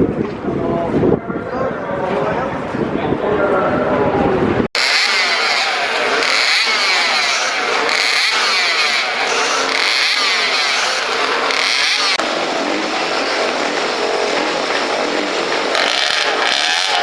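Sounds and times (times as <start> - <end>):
motorcycle engines revving high: 4.8 - 17.0.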